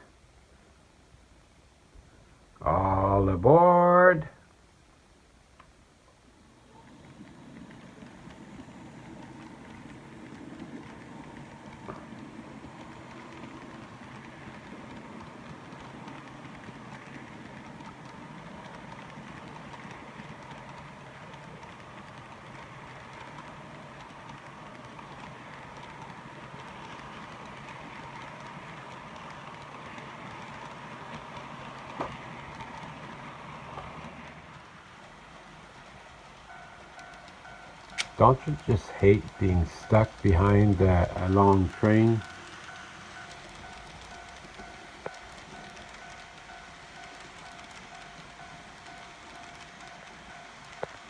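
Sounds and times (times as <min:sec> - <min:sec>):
wheels rolling on track: 0:05.5 - 0:51.0
model train motor hum: 0:06.2 - 0:51.0
sharp click: 0:38.0 - 0:38.2.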